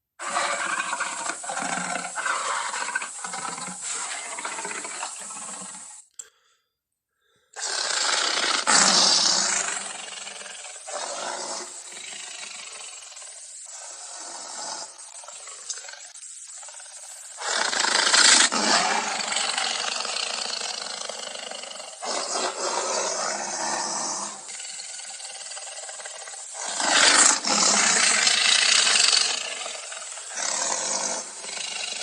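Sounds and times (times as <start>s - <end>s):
dinosaur growls: 17.0s - 32.0s
dinosaur roaring: 17.4s - 32.0s.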